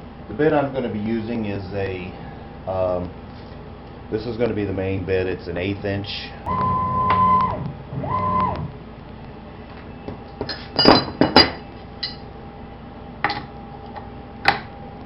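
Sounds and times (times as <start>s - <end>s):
short steady tones: 6.5s - 8.8s
metal tools clinking: 10.4s - 12.2s.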